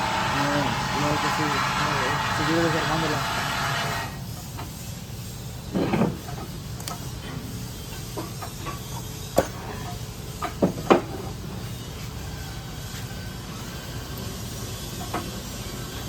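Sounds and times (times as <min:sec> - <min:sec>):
steady low hum: 0:00.0 - 0:10.6.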